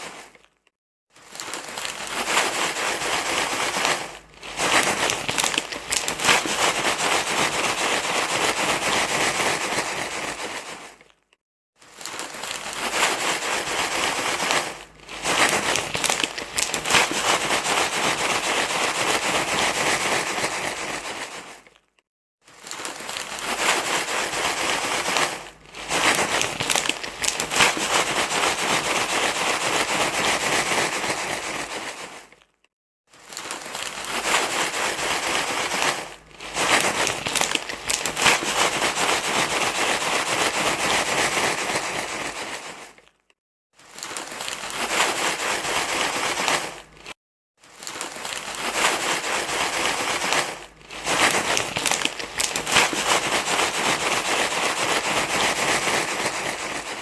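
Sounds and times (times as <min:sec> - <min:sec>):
crinkling rustle of crumpling: 0:00.0 - 0:57.0.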